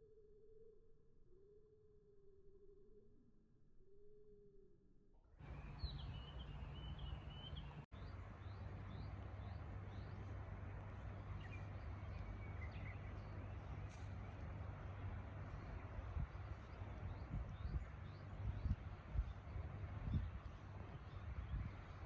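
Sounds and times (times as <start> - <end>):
small birds chirping: 5.4 - 22.0
wind noise on microphone: 13.8 - 22.0.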